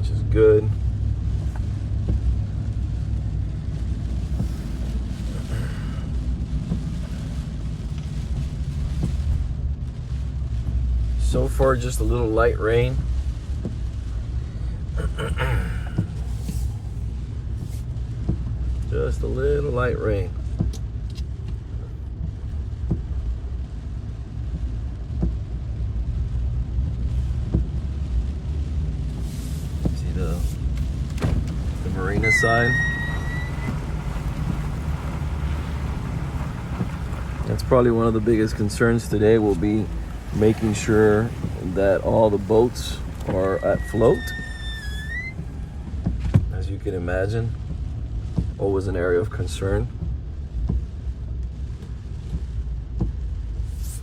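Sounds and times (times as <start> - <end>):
car engine and tyre rumble: 0.0 - 54.0
faint hiss: 29.1 - 50.0, 53.5 - 54.0.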